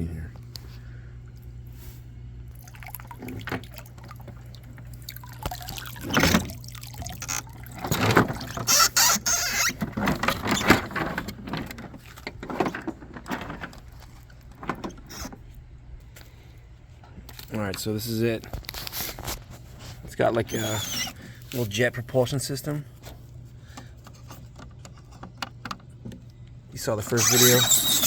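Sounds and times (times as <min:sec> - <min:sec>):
steady low hum: 0:00.0 - 0:08.7, 0:09.7 - 0:27.8
water pouring and splashing: 0:02.5 - 0:10.1.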